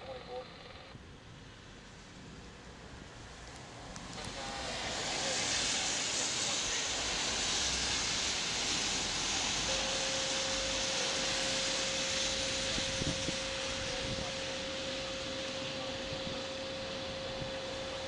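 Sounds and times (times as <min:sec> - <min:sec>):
heavy rain: 0:01.4 - 0:18.0
steady tone: 0:04.2 - 0:18.0.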